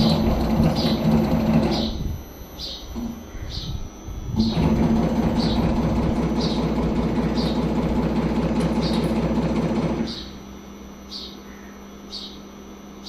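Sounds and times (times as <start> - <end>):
inverter humming: 0.0 - 13.0
faint high chirp: 1.7 - 4.3, 10.1 - 13.0.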